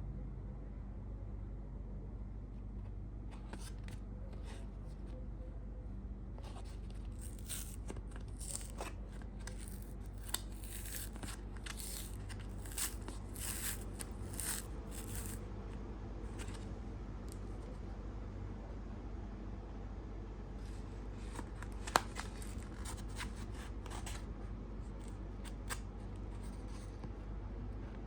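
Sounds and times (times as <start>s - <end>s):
steady low hum: 0.0s - 28.0s
packaging crinkling: 7.0s - 15.4s.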